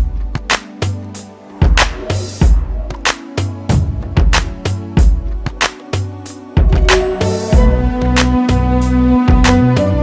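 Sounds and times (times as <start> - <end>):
pop music with drum beat: 1.6 - 8.6.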